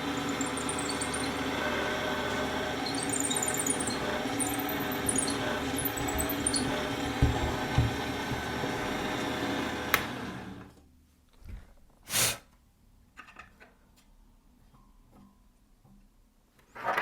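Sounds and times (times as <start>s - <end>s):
drill running and winding down: 0.0s - 10.5s
short hiss: 12.1s - 12.5s.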